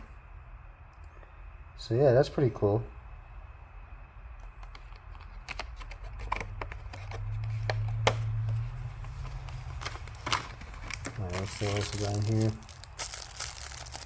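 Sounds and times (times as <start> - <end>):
box being handled and unpacked: 5.1 - 14.0.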